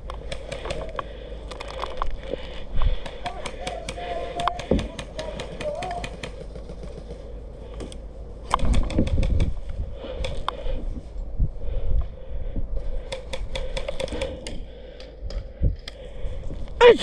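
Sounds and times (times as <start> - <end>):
airsoft guns firing: 3.0 - 7.2.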